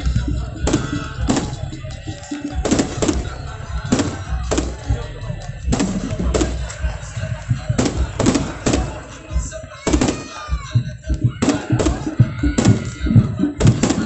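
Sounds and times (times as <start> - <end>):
low rumble: 0.0 - 9.6
crowd voices: 0.0 - 14.0
fireworks bangs: 0.0 - 14.0
music: 0.0 - 14.0.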